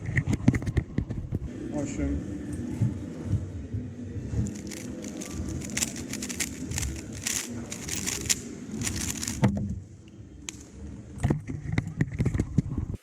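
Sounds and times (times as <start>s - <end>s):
puzzle cube plastic clicks: 4.4s - 9.5s.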